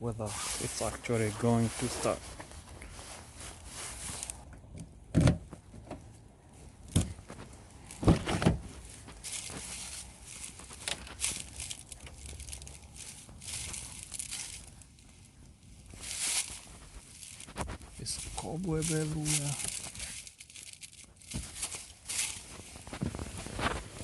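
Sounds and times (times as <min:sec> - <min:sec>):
rustling and scraping: 0:00.2 - 0:24.0
car door clunks: 0:05.1 - 0:06.0, 0:08.0 - 0:08.7.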